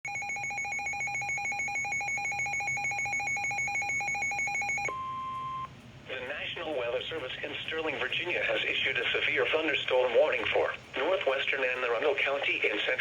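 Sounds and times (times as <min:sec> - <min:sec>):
steady alarm tone: 0:00.1 - 0:06.4.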